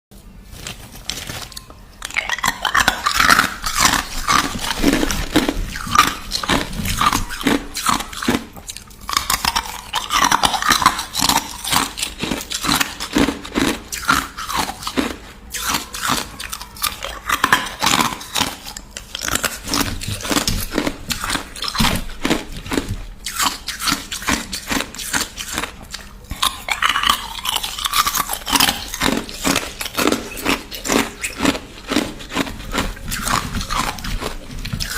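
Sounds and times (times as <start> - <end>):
ice being chewed: 1.5 - 34.9.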